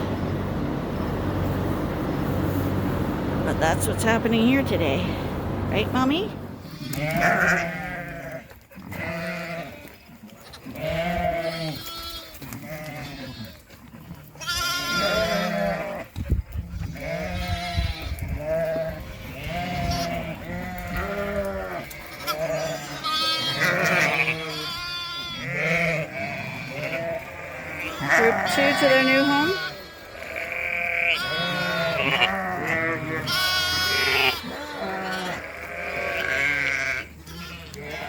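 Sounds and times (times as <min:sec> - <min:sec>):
sheep bleating: 0:06.6 - 0:13.6, 0:14.4 - 0:16.1, 0:17.0 - 0:38.0
lambs crying: 0:06.6 - 0:13.7, 0:14.3 - 0:38.0.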